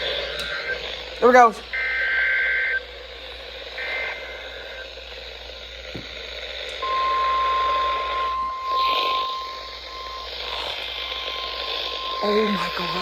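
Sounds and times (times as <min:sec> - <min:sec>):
steady warning alarm tone: 0:00.0 - 0:13.0
two-tone digital data burst: 0:06.8 - 0:13.0.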